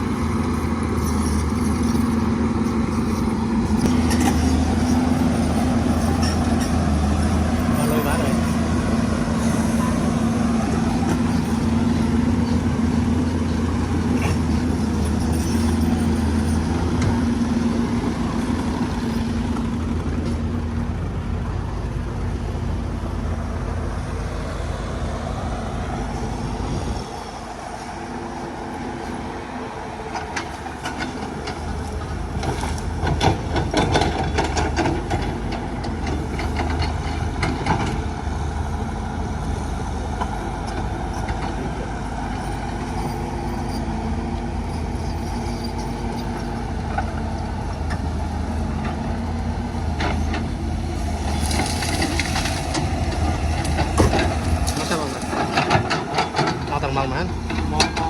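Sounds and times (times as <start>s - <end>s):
diesel machinery engine running: 0.0s - 58.0s
metallic clanks and knocks: 30.1s - 35.4s, 51.2s - 58.0s.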